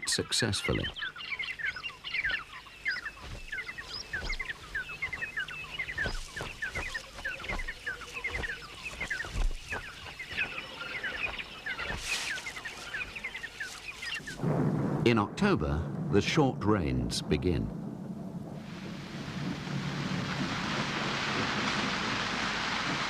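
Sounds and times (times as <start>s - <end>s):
birds chirping: 0.0s - 14.5s.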